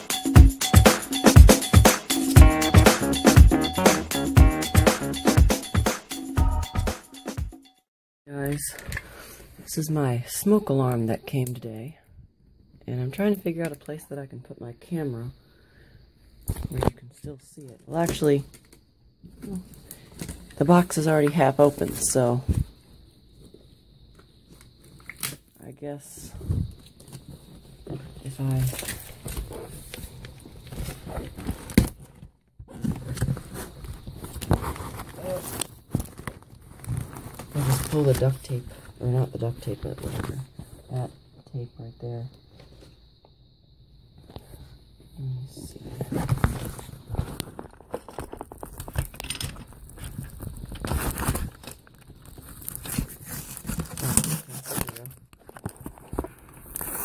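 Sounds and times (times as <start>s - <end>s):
cardboard box crinkling and scraping: 27.5s - 38.6s, 46.0s - 57.0s
tape tearing: 48.1s - 56.0s, 56.6s - 57.0s.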